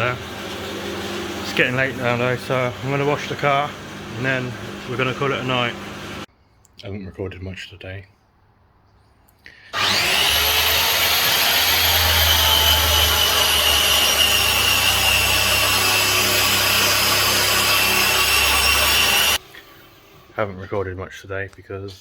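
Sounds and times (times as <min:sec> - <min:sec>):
power tool motor whining: 0:09.8 - 0:20.4.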